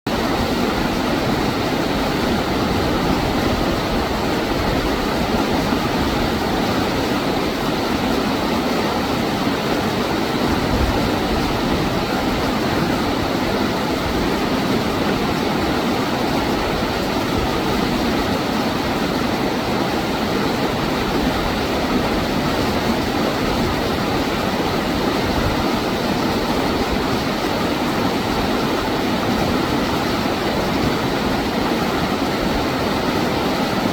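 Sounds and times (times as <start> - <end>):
stream water rushing: 0.1 - 33.9.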